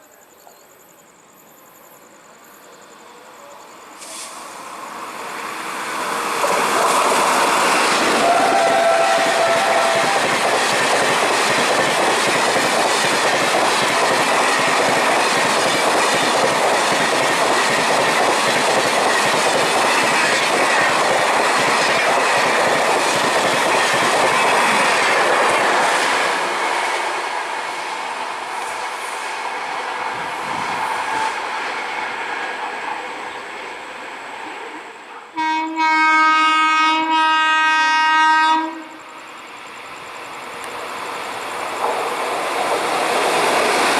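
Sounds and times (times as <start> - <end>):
train wheels clattering on rails: 6.0 - 27.0, 40.6 - 43.9
train horn: 8.1 - 10.5, 35.3 - 39.1.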